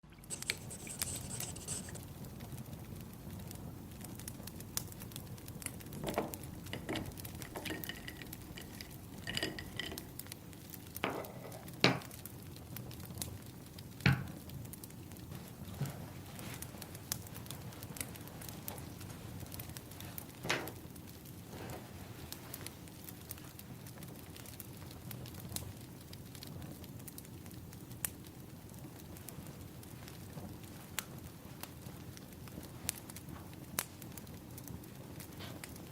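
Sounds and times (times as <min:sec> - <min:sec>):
fire popping: 0:00.1 - 0:35.9
wood fire crackling: 0:00.1 - 0:35.9.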